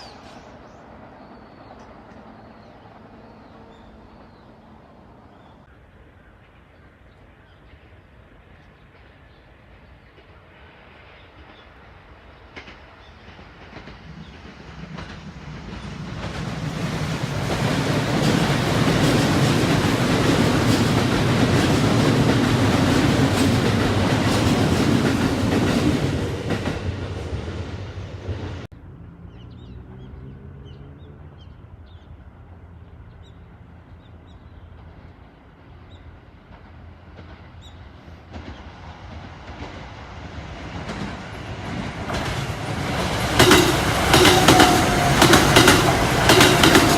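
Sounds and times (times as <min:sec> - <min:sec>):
train wheels clattering on rails: 0:08.7 - 0:28.7, 0:34.6 - 0:46.9.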